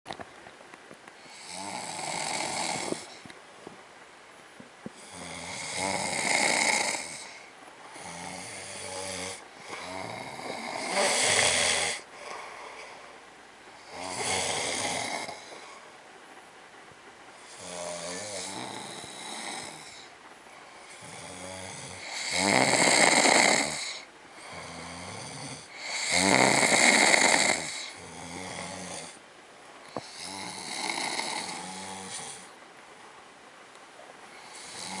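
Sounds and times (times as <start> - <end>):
people snoring: 1.3 - 3.3, 5.0 - 13.0, 13.8 - 15.8, 17.4 - 20.1, 20.8 - 29.2, 29.9 - 32.5, 34.4 - 35.0.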